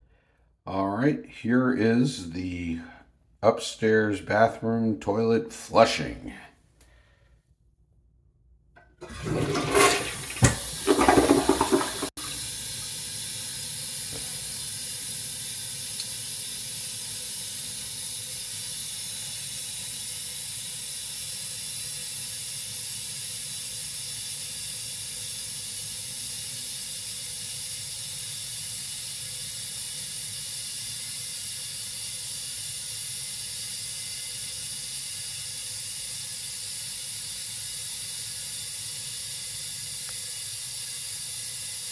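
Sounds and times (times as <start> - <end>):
toilet flushing: 8.8 - 41.9
toilet tank refilling hiss: 9.0 - 41.9.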